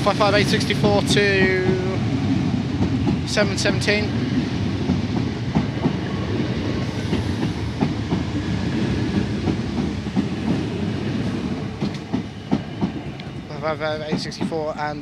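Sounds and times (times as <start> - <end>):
electric train passing rumble: 0.0 - 15.0
wheels clicking over rail joints: 7.1 - 14.7.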